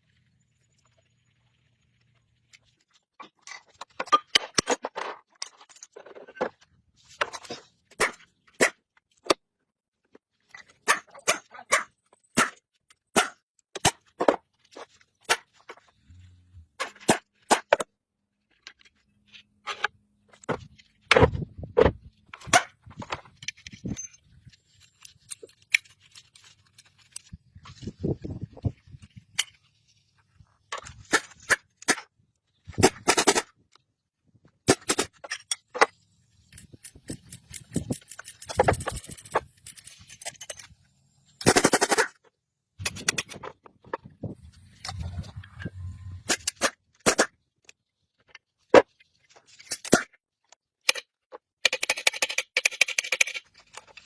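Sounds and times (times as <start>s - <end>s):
sharp clicks and knocks: 49.6s - 54.0s.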